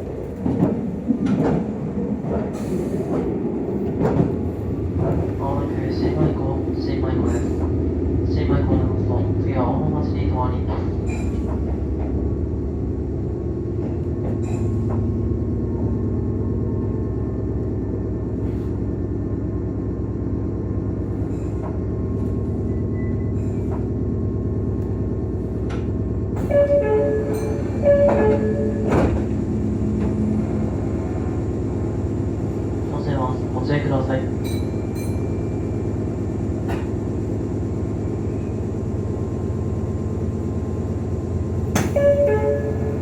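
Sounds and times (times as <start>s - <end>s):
two-tone door chime: 26.5s - 29.0s, 41.9s - 43.0s.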